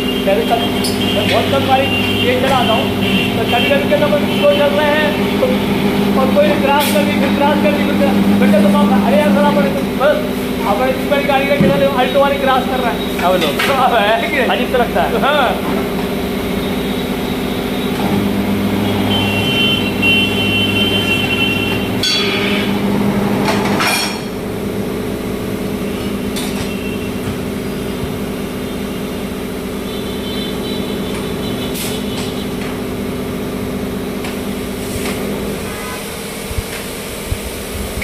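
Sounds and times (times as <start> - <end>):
high squeals: 0.0 - 14.8, 16.1 - 22.8
machine humming: 0.0 - 38.0.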